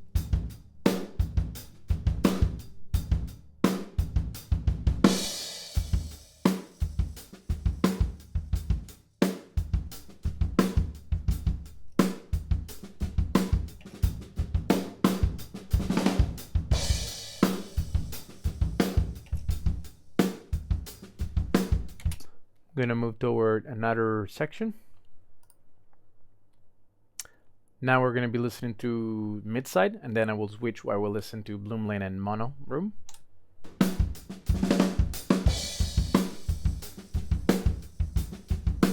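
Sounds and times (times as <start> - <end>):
acoustic drum kit groove: 0.0 - 22.2, 33.6 - 38.9.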